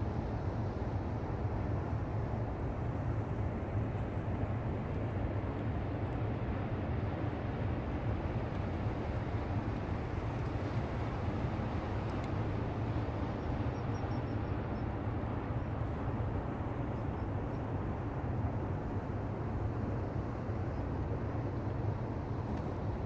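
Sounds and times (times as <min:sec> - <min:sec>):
faint high ticks: 0:12.0 - 0:12.4.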